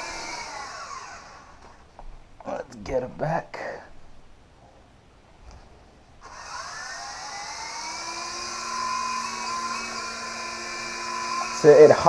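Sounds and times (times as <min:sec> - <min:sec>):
toy helicopter motor whine: 0:00.0 - 0:01.6, 0:06.2 - 0:12.0
rotors hissing: 0:00.0 - 0:01.7, 0:06.2 - 0:12.0.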